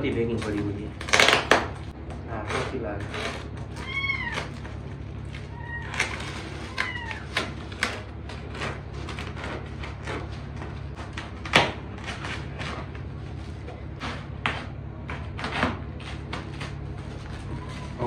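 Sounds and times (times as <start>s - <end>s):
cardboard packaging torn open: 0.3s - 1.9s, 2.5s - 13.6s.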